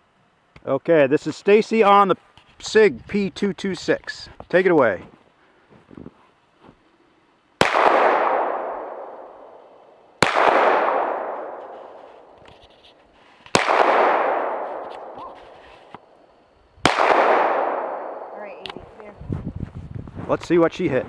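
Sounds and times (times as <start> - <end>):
pistol shots with echo: 7.6 - 12.4, 13.5 - 15.5, 16.8 - 18.4.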